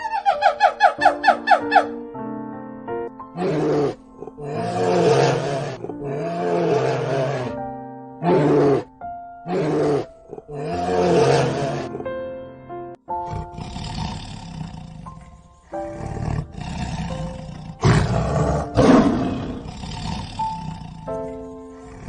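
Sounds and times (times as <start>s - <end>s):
background music: 0.0s - 22.0s
big cat roaring: 3.4s - 7.6s, 8.2s - 8.9s, 9.5s - 12.1s, 13.2s - 22.0s.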